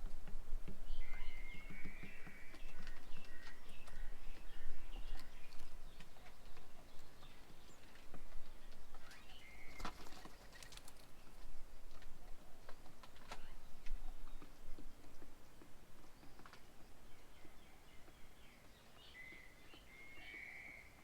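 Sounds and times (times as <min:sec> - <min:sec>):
birds chirping and calling: 0:00.9 - 0:11.4, 0:13.2 - 0:21.0
small clicks and taps: 0:11.9 - 0:17.0.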